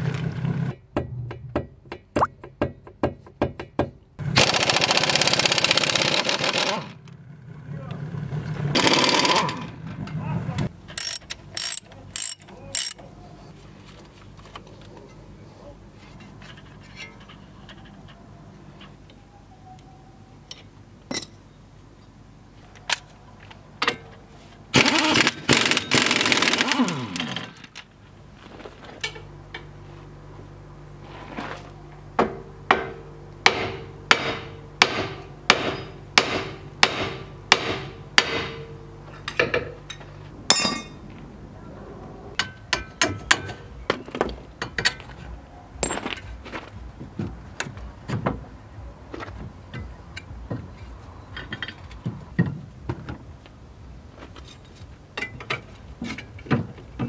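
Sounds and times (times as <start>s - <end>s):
tools clinking on metal: 10.9s - 13.0s
hammer striking steel: 32.3s - 41.0s.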